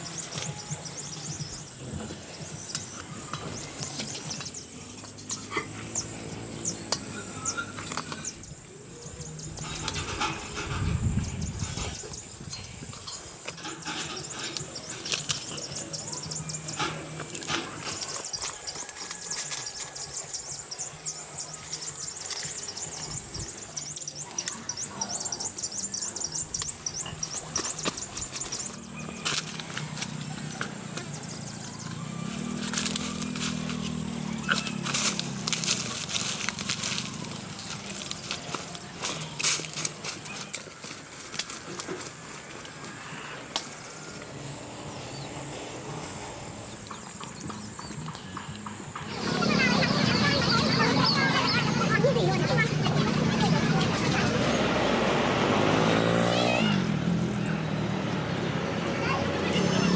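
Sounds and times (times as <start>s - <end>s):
small animals chirping: 46.6s - 54.6s.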